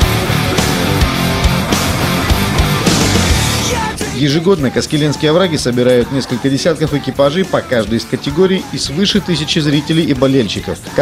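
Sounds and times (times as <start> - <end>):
heavy rock music: 0.0 - 11.0.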